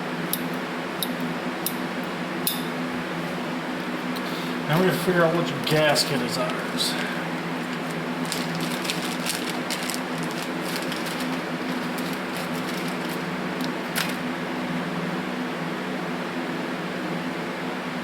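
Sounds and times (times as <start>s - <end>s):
paper gaskets rustling: 4.7s - 14.4s.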